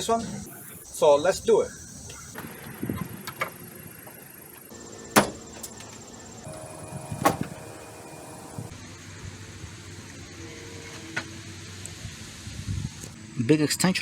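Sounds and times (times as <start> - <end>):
low steady hum: 6.5 - 8.7.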